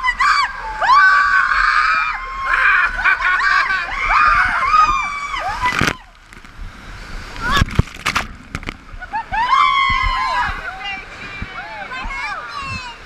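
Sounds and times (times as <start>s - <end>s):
riders screaming and shrieking: 0.0s - 6.1s, 9.0s - 11.0s.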